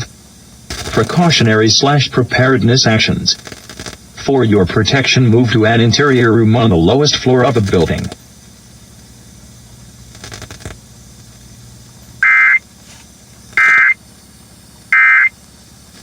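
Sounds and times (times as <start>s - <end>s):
faint low hum: 0.0s - 16.0s
digital data tone bursts: 0.7s - 3.4s, 12.2s - 12.6s, 13.6s - 14.0s, 14.9s - 15.4s.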